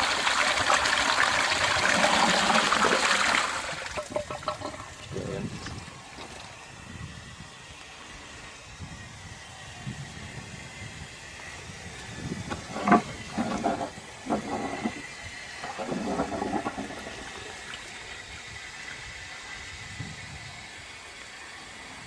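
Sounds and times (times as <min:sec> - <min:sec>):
water gurgling through toilet cistern: 0:00.0 - 0:06.6, 0:12.0 - 0:19.0
water splashing: 0:12.5 - 0:18.1.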